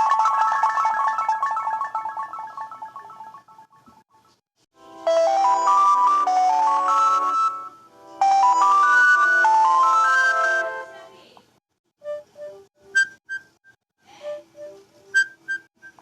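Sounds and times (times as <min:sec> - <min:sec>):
phone alarm chiming melody: 0:00.0 - 0:04.0, 0:05.0 - 0:10.8.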